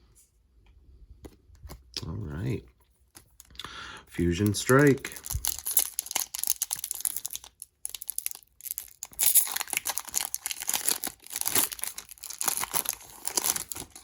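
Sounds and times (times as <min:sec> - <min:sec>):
foil wrapper crinkling and tearing: 0:04.2 - 0:14.0.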